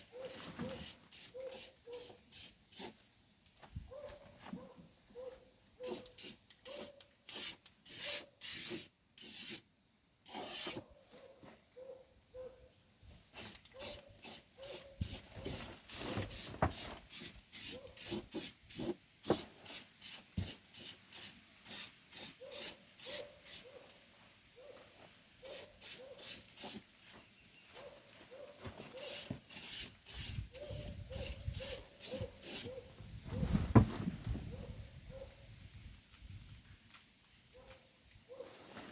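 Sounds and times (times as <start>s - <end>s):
aerosol spray hissing bursts: 0.0s - 3.0s, 5.8s - 9.6s, 10.3s - 10.8s, 13.4s - 23.6s, 25.5s - 27.2s, 29.0s - 32.7s.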